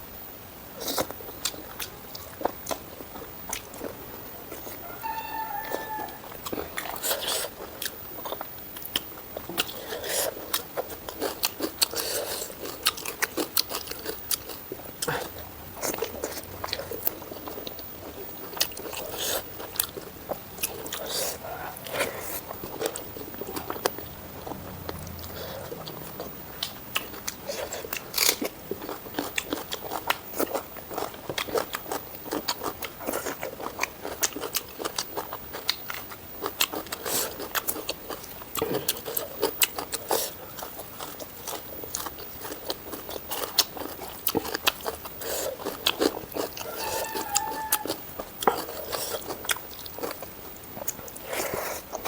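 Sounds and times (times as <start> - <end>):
close chewing: 0.7 - 52.0
food crunching: 0.8 - 52.0.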